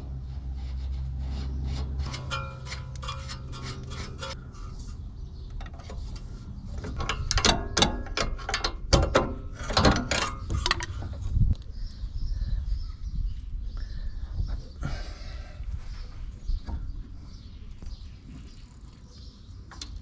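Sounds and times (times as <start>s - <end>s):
metallic clicks and clanks of wrench: 6.8s - 11.0s.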